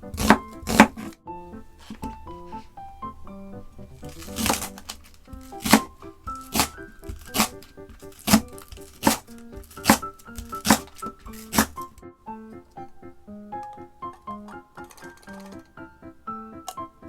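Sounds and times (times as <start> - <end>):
knife chopping on cutting board: 0.0 - 1.2, 4.1 - 11.8
background music: 0.0 - 17.0.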